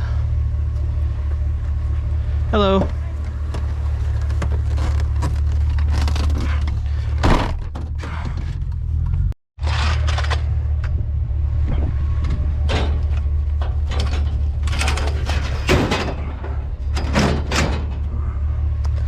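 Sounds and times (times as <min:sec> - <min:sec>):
vehicle engine humming: 0:00.0 - 0:19.0
metallic clattering and rattling: 0:11.7 - 0:18.4.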